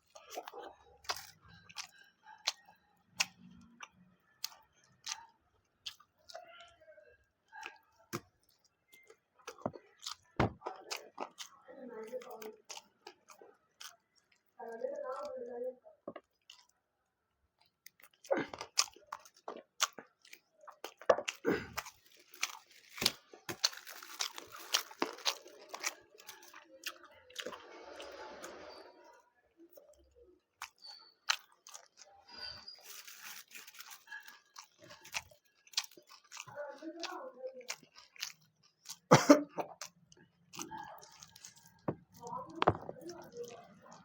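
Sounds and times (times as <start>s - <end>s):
person chewing and crunching: 0.0s - 6.7s, 7.4s - 15.3s, 16.1s - 16.8s, 17.5s - 28.9s, 30.5s - 44.0s.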